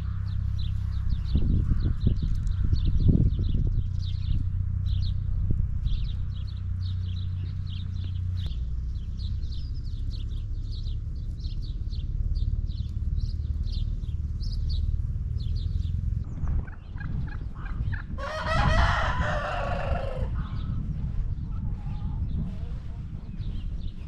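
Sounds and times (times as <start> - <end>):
low rumble: 0.0 - 24.0
poultry chirping: 5.9 - 24.0
rooster crowing: 18.2 - 20.5.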